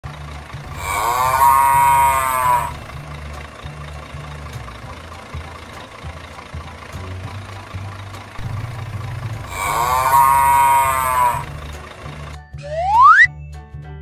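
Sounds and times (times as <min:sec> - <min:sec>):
low rumble: 0:00.1 - 0:13.1
cow mooing: 0:00.7 - 0:02.9, 0:09.5 - 0:11.5.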